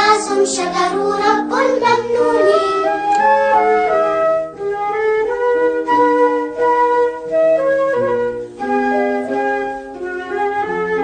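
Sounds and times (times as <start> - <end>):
instrumental melody over chords: 1.4 - 11.0.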